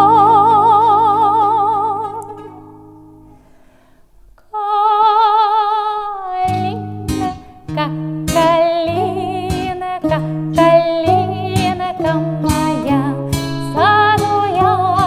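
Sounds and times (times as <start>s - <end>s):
woman singing with vibrato: 0.0s - 3.0s, 4.4s - 15.0s
plucked string chords: 0.0s - 3.4s, 6.5s - 15.0s
strummed guitar chords: 0.0s - 3.4s, 6.4s - 15.0s.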